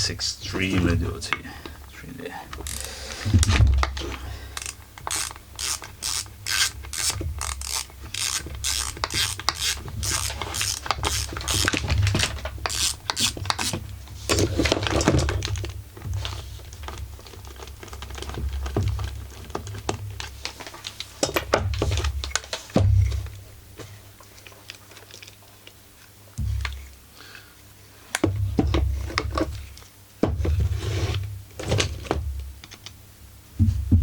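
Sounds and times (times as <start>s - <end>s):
ratchet clicking: 2.6s - 2.9s, 4.6s - 11.8s, 12.7s - 13.7s
tool rubbing and scraping: 2.6s - 3.6s, 4.6s - 13.8s.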